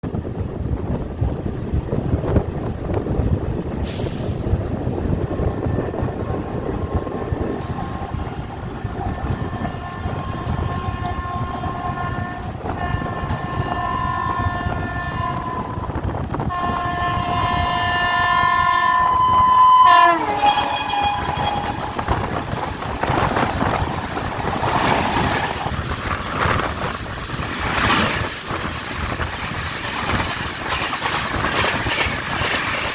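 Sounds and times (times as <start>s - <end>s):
train rumbling past: 0.0s - 32.9s
train horn blasts: 5.1s - 25.6s.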